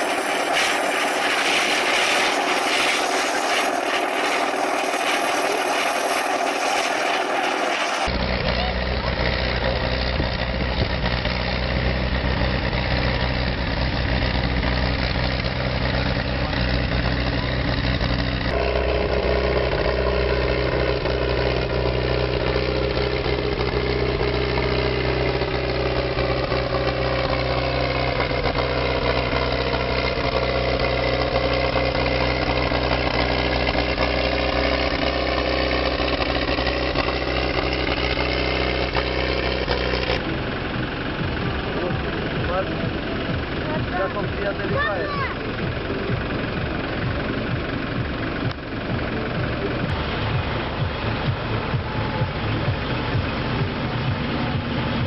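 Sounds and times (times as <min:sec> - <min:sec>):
high whining tones: 0:00.0 - 0:09.2
heavy machine engine running: 0:00.0 - 0:55.0.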